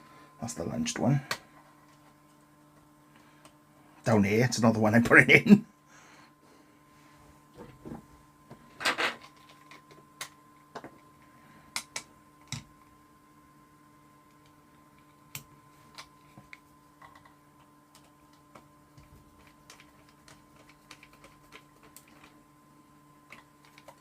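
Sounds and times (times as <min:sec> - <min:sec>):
faint electrical hum: 0:00.0 - 0:24.0.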